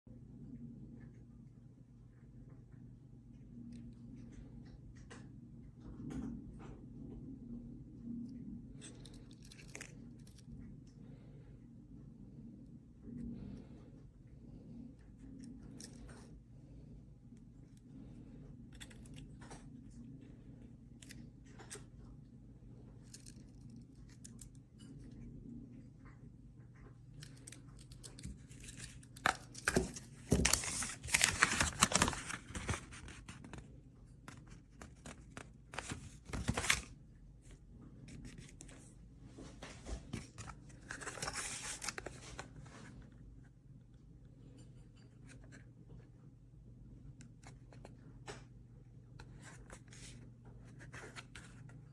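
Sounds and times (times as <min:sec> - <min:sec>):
rustling and tearing: 0:27.2 - 0:33.7, 0:34.3 - 0:37.0, 0:39.8 - 0:42.9.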